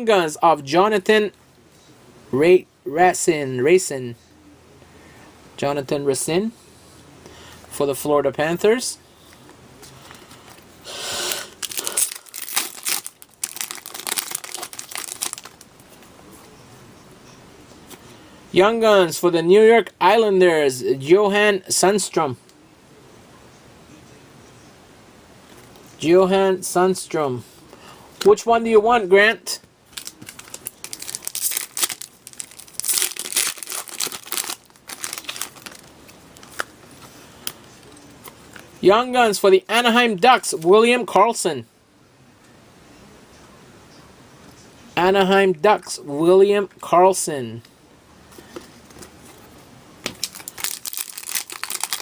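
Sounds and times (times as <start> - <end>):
plastic wrapper crinkling: 11.5 - 15.8, 29.9 - 36.8, 50.0 - 52.0
wrapper rustling and crackling: 11.5 - 15.9, 29.9 - 37.1, 50.0 - 52.0.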